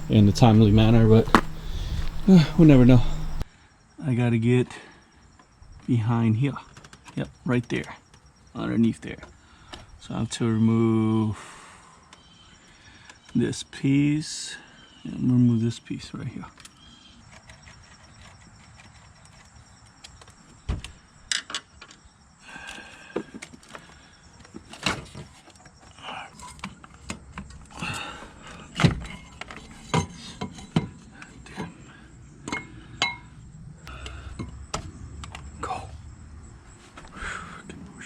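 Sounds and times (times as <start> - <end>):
car parts and tools clinking: 0.0 - 3.4, 28.7 - 31.8, 32.4 - 35.6.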